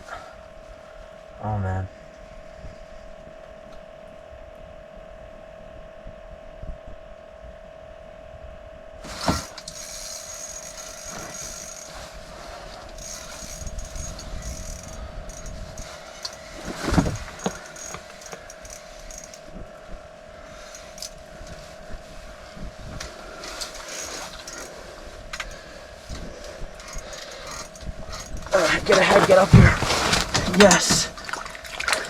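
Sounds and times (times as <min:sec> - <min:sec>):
steady hum: 0:00.0 - 0:32.0
rustling and scraping: 0:09.0 - 0:19.6, 0:20.5 - 0:32.0.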